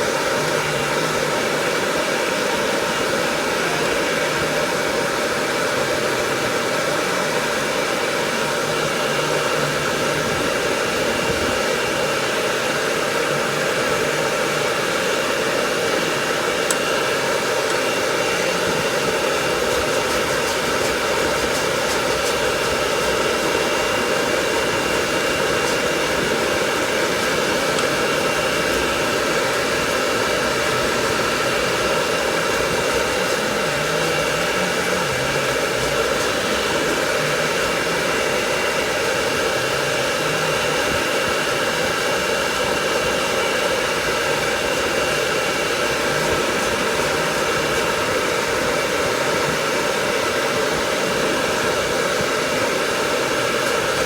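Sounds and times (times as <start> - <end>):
hair dryer blowing: 0.0 - 54.0.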